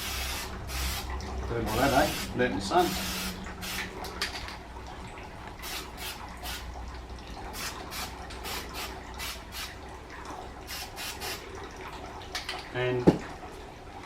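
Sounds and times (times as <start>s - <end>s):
spray can hissing: 0.0s - 1.1s, 1.8s - 3.9s, 5.6s - 6.6s, 7.6s - 9.7s, 10.7s - 11.4s.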